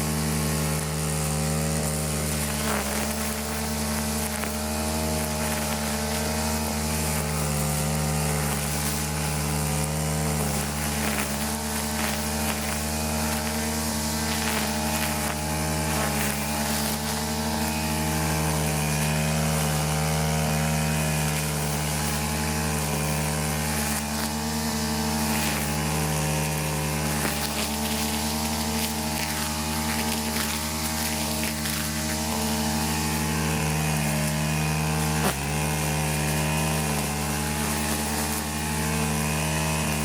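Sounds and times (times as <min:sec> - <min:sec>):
engine running steadily: 0:00.0 - 0:40.0.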